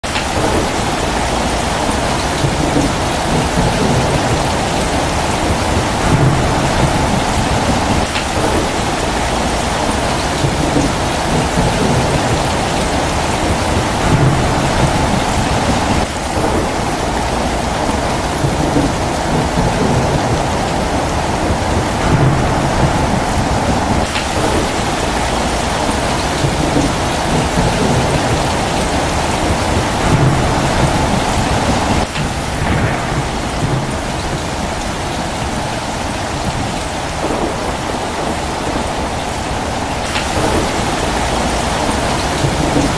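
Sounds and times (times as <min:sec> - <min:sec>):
steady rain falling: 0:00.0 - 0:42.9
low rumbling thunder: 0:00.1 - 0:42.9
low rumble: 0:32.3 - 0:35.7.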